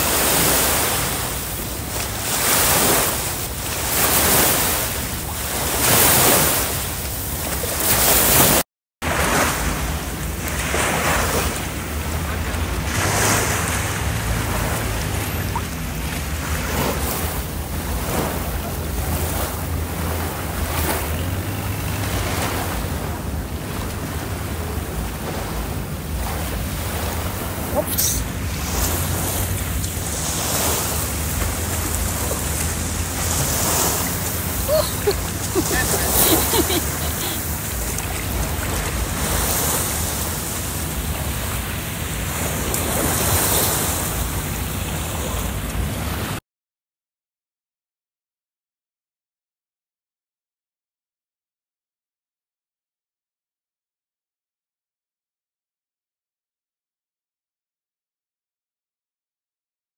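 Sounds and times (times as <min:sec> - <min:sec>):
rushing water: 0:00.0 - 0:46.4
sea washing: 0:00.0 - 0:46.4
wind buffeting microphone: 0:00.0 - 0:46.4
deep rumble: 0:09.1 - 0:35.8
low engine drone: 0:09.1 - 0:46.4.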